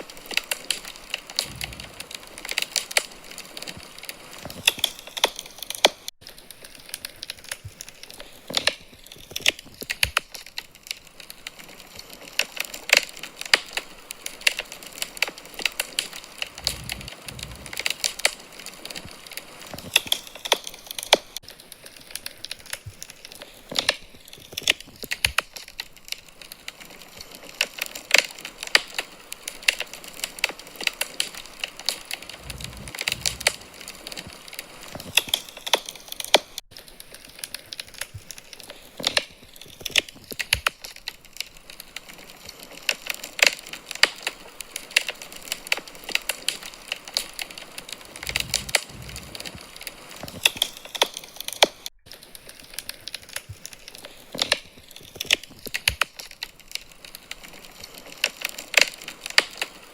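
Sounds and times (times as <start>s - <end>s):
wood fire crackling: 0.0s - 59.9s
low rumble: 1.4s - 2.1s, 16.5s - 18.0s, 32.3s - 34.0s, 48.2s - 49.8s.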